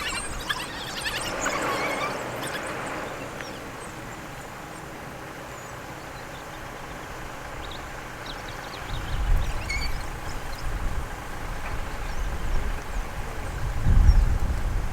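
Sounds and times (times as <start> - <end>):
wild dogs twittering: 0.0 - 4.6.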